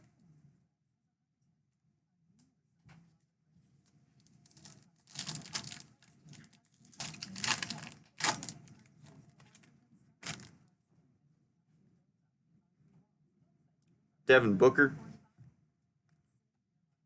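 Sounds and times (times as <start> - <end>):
wrapper tearing and crinkling: 4.6 - 8.8, 10.2 - 10.5.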